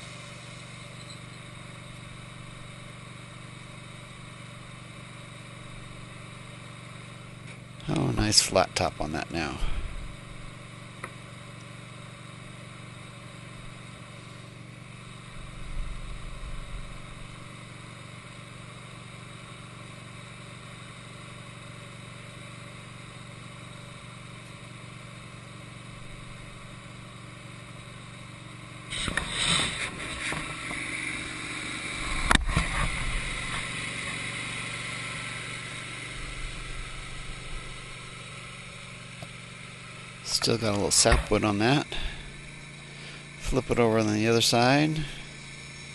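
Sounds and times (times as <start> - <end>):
sawmill engine running: 0.0 - 45.9
band blade cutting log: 28.9 - 31.2.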